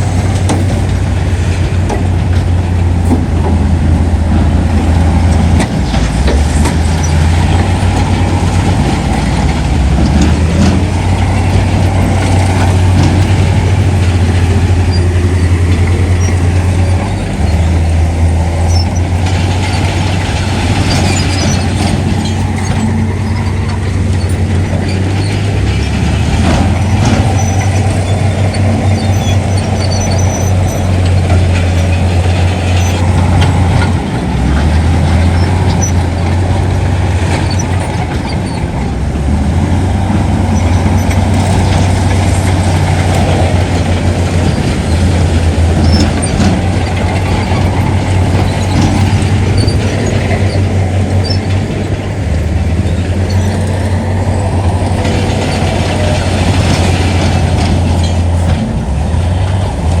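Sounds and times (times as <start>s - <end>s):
heavy diesel engine drone: 0.0s - 60.0s
machinery clanks and rattles: 0.0s - 60.0s.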